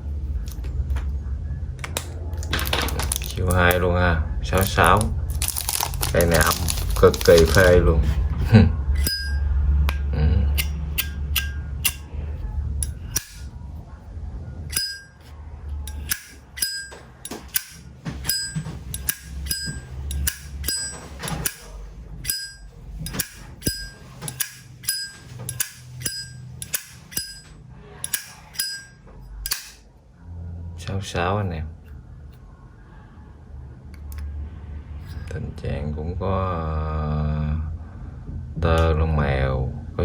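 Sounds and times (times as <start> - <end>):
lighter lid clinking open and shut: 10.6 - 12.0, 12.8 - 13.5, 15.9 - 21.6, 23.1 - 27.4, 28.0 - 29.8.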